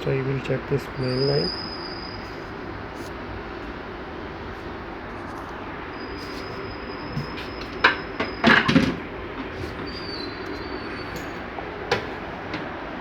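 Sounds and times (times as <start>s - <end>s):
faint high whine: 0.0s - 9.0s.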